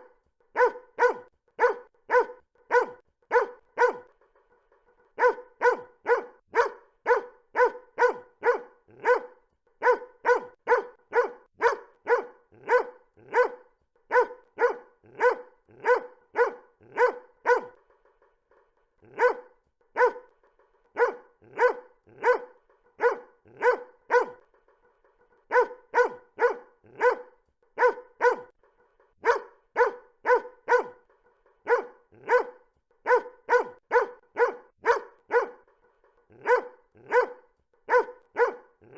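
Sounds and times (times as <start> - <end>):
dog barking: 0.0 - 4.2, 5.1 - 17.9, 19.0 - 24.6, 25.3 - 28.6, 29.2 - 38.9.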